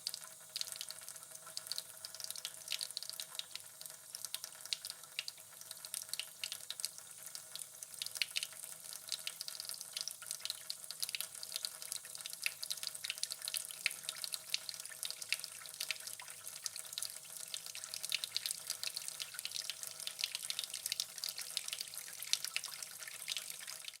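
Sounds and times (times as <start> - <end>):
water dripping fast: 0.0 - 24.0.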